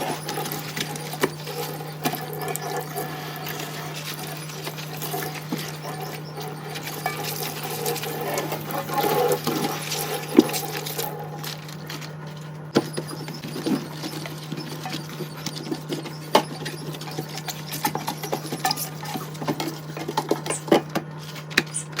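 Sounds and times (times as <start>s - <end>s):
dishes clinking: 0.0s - 11.5s
running water at sink: 0.0s - 11.9s
steady low hum: 0.0s - 21.7s.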